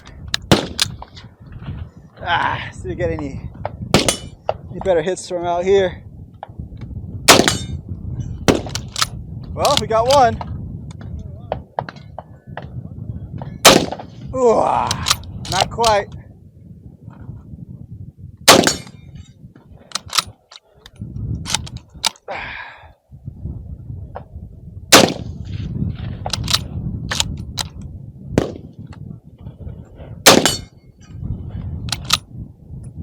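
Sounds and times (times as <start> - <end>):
loud rifle shots: 0.4 - 0.9, 3.9 - 4.4, 7.3 - 7.8, 8.5 - 9.1, 13.6 - 14.1, 18.5 - 19.0, 24.9 - 25.4, 28.4 - 28.7, 30.2 - 30.7
bullets clanging on steel targets: 4.0 - 4.4, 30.3 - 30.7
fainter gunshots: 25.0 - 25.2.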